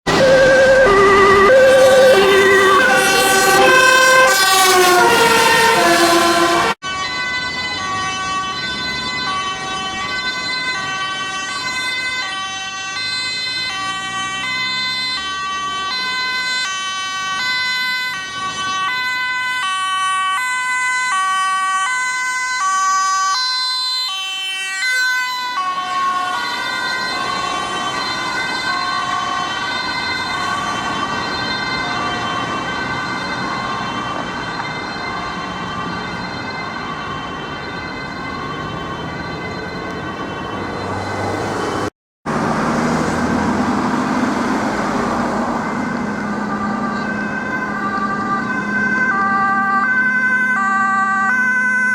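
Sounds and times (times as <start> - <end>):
road noise: 0.0 - 51.9
stepped falling tones: 0.1 - 6.8
two-tone siren: 0.1 - 51.9.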